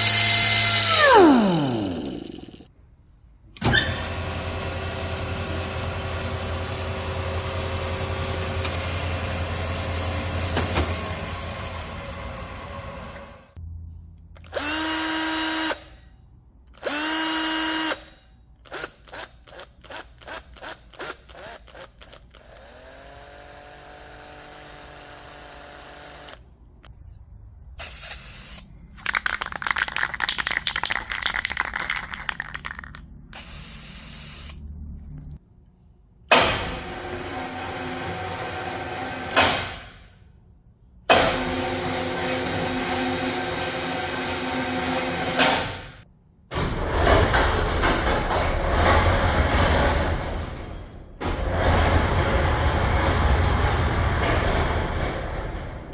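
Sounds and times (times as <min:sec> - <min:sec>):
drill motor bursts: 0:00.0 - 0:02.7, 0:14.5 - 0:15.9, 0:16.8 - 0:18.1, 0:18.7 - 0:26.4
loud rasping grinding: 0:00.0 - 0:02.7
motor spinning up: 0:00.0 - 0:02.7, 0:29.0 - 0:34.6
noisy machine running: 0:00.0 - 0:02.7
quick clicks: 0:28.1 - 0:33.6.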